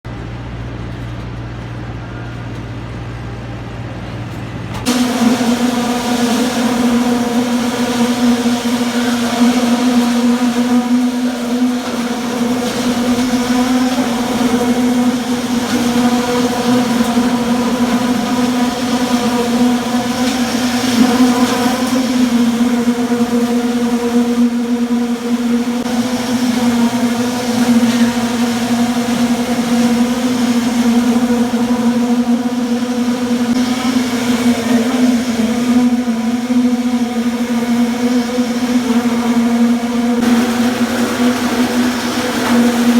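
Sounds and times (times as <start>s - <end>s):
machinery engine humming: 0.1s - 42.9s.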